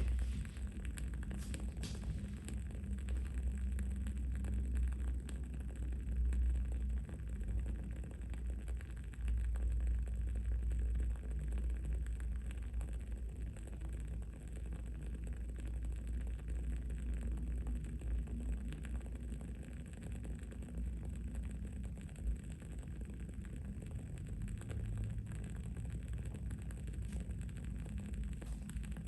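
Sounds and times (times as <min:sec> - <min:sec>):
candle wick crackling: 0:00.0 - 0:05.4, 0:18.8 - 0:29.0
low background rumble: 0:00.0 - 0:29.0.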